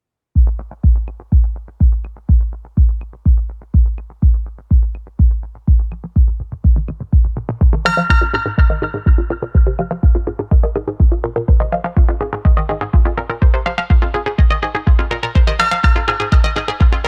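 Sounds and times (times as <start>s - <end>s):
kick-drum beat: 0.4s - 17.0s
bright synthesizer melody: 7.8s - 17.0s.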